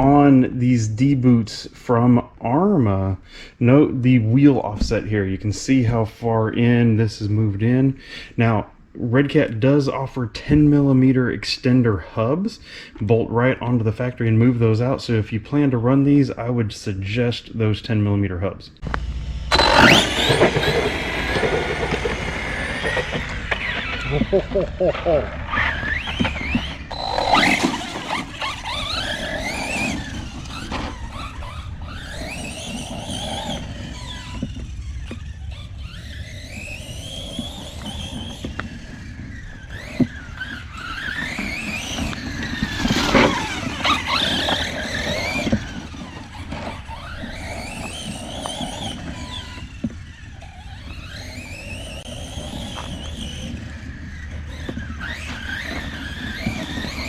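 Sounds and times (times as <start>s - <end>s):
electric motor whine: 18.8s - 57.0s.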